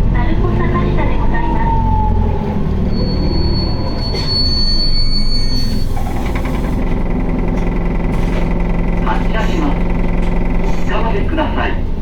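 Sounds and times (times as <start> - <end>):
bus diesel engine and road noise: 0.0 - 12.0
thin high squeal: 2.9 - 6.2.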